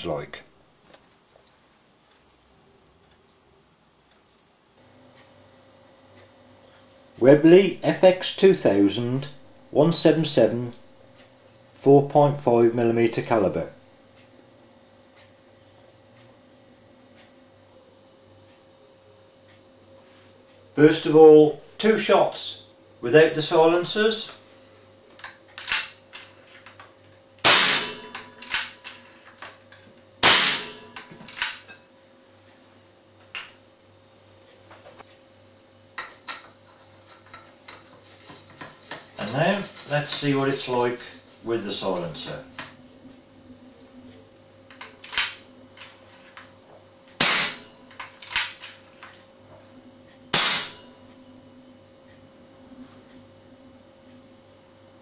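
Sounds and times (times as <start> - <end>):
air rifle shots: 27.4 - 28.7, 30.2 - 30.8.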